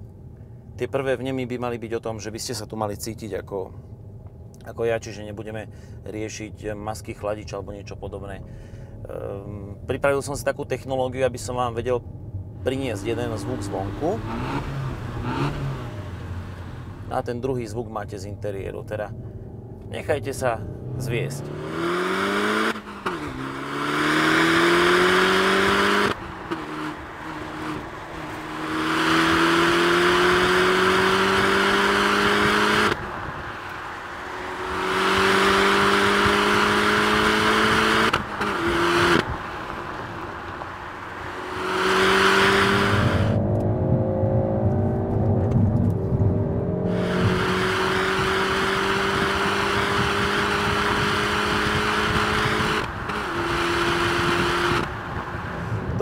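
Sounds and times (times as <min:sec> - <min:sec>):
car engine accelerating hard: 0:12.6 - 0:17.2, 0:20.6 - 0:56.0.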